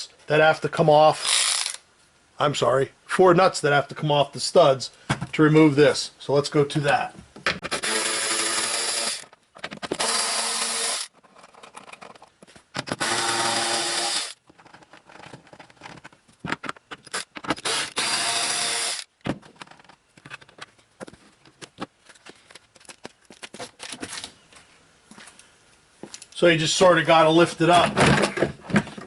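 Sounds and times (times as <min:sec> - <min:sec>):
power tool spinning nuts off: 0:07.7 - 0:09.3, 0:09.9 - 0:11.1, 0:12.8 - 0:14.4, 0:17.1 - 0:19.1.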